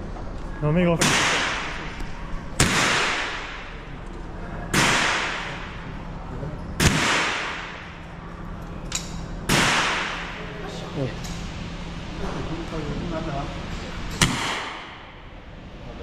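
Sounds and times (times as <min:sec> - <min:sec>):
gunshots with echo: 0:01.0 - 0:02.0, 0:02.6 - 0:03.9, 0:04.7 - 0:05.8, 0:06.8 - 0:08.0, 0:09.5 - 0:10.5, 0:14.2 - 0:15.1.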